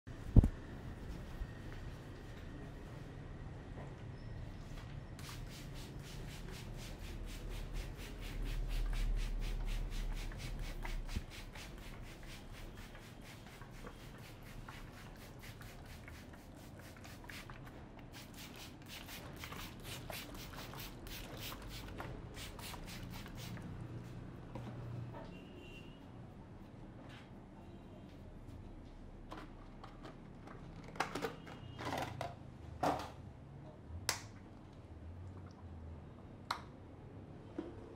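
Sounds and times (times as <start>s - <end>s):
hands rubbing over hair: 5.2s - 17.5s, 18.2s - 23.6s.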